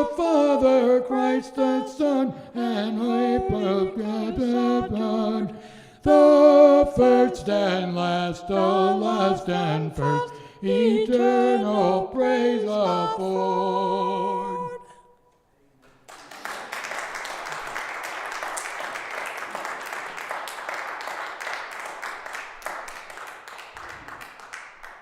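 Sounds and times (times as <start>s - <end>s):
two people singing a hymn: 0.0s - 15.2s
congregation applauding: 15.8s - 25.0s.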